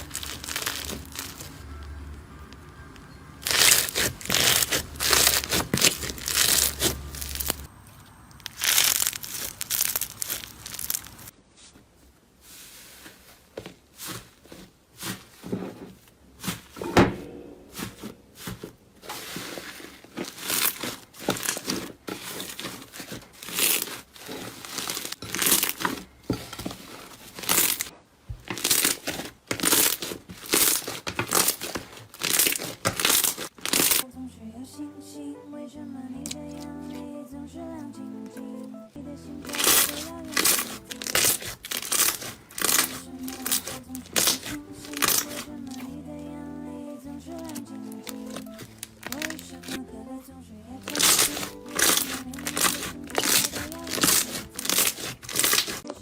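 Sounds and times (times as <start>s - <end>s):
slime squishing and crackling: 0.0s - 1.6s, 3.4s - 7.7s, 8.4s - 11.3s, 17.8s - 34.0s, 39.4s - 45.9s, 47.3s - 49.8s, 50.8s - 56.0s.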